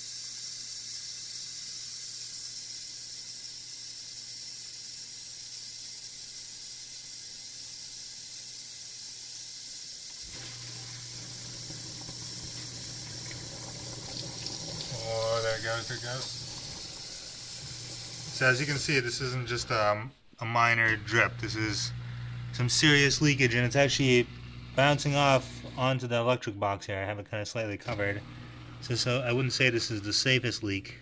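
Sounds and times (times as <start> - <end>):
water hissing into dishwasher: 0.0 - 19.2
water spraying: 0.0 - 19.4.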